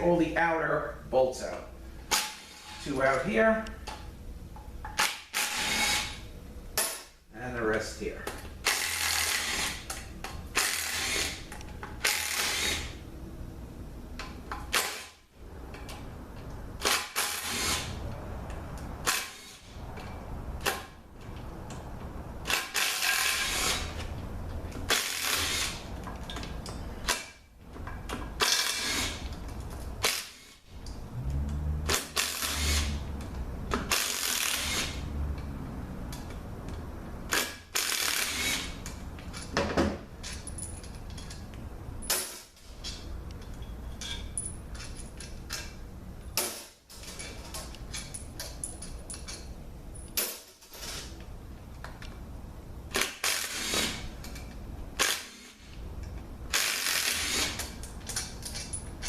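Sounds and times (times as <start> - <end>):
air wrench bursts: 5.0 - 6.2, 8.6 - 13.0, 16.8 - 18.0, 19.0 - 19.7, 22.4 - 24.0, 24.8 - 25.9, 28.4 - 29.3, 30.0 - 30.6, 31.9 - 33.1, 33.7 - 35.1, 37.3 - 39.0, 52.9 - 54.2, 55.0 - 55.7, 56.5 - 58.7
steady low hum: 5.7 - 37.4.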